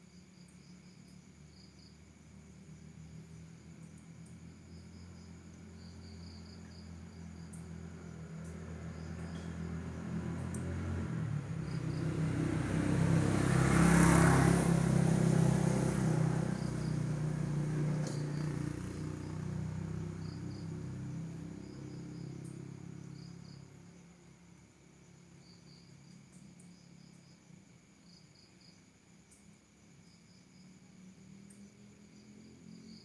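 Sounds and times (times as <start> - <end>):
crickets chirping: 0.0 - 33.0
vehicle passing by: 2.5 - 23.9.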